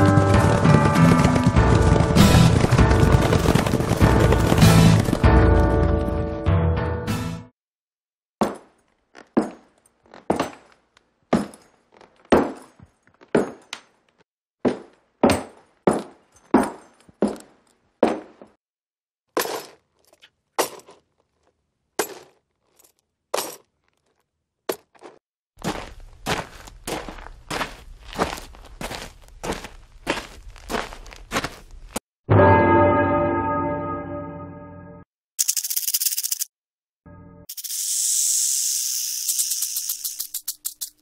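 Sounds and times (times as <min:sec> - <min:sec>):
boots on wooden boards: 0:08.4 - 0:18.6, 0:19.4 - 0:32.0
footsteps on paving stones: 0:08.4 - 0:18.6, 0:19.4 - 0:32.0
boots in sand: 0:24.7 - 0:32.0.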